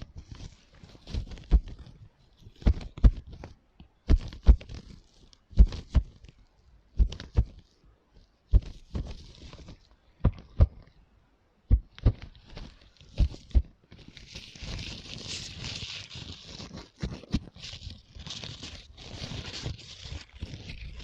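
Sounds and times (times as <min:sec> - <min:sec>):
dull thudding knocks: 0:11.7 - 0:12.3
light scratching: 0:11.8 - 0:21.0.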